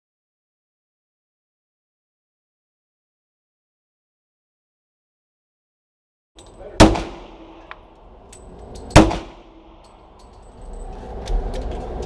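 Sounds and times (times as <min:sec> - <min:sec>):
pistol shots echoing indoors: 0:06.8 - 0:07.8, 0:08.8 - 0:10.0.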